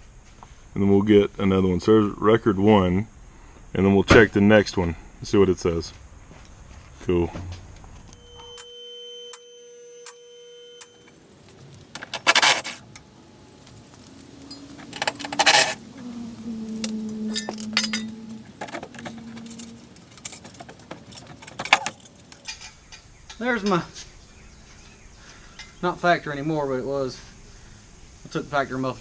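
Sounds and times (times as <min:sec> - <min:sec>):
metal items jingling: 0:12.0 - 0:13.0, 0:14.3 - 0:15.9, 0:16.8 - 0:23.8
sharp metal clinks: 0:14.3 - 0:15.8, 0:16.8 - 0:23.8.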